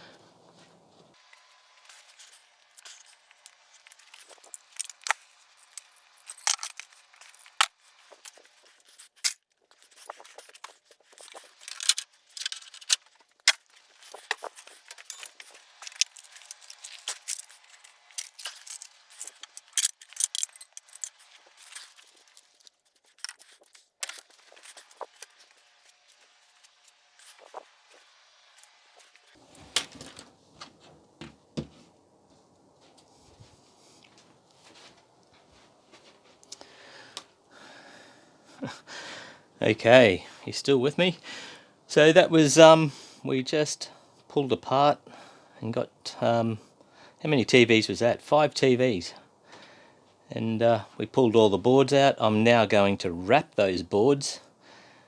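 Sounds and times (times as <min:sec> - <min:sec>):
metal screws clinking: 0:01.3 - 0:29.4.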